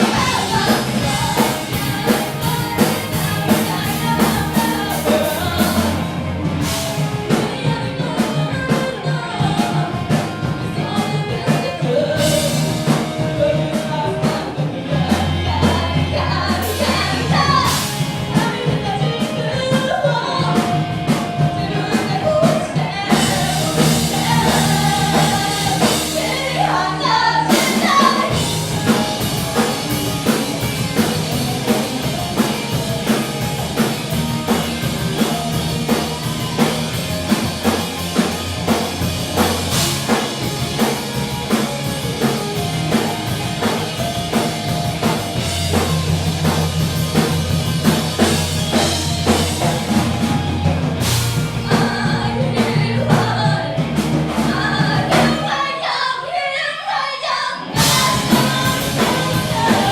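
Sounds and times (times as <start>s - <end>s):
drum beat: 0.0s - 7.7s, 22.5s - 26.8s, 27.5s - 52.2s, 57.8s - 59.9s
rock music with singing: 0.0s - 59.9s.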